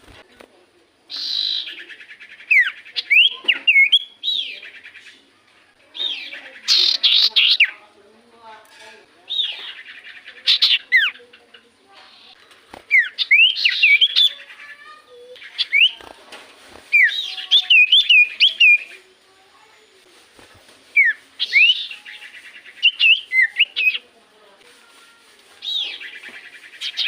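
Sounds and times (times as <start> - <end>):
bird singing whistled notes: 1.1 - 5.2, 12.1 - 14.5, 15.4 - 16.0, 16.9 - 20.0, 20.9 - 24.0.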